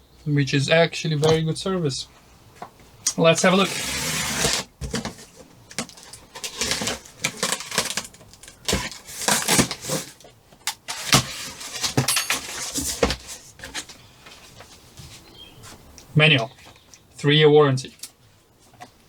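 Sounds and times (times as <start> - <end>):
cardboard packaging rustling: 3.2 - 15.8.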